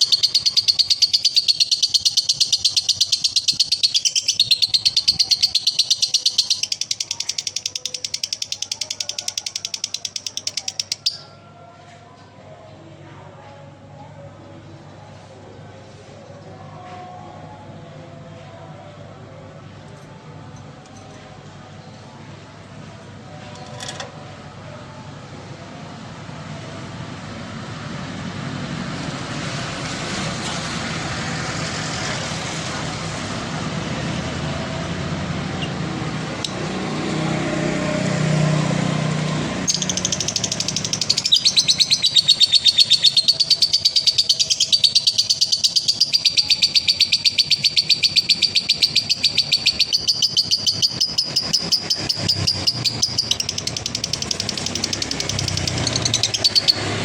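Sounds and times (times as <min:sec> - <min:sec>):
bird's rapid high-pitched trill: 0:00.0 - 0:11.3, 0:39.6 - 0:56.9.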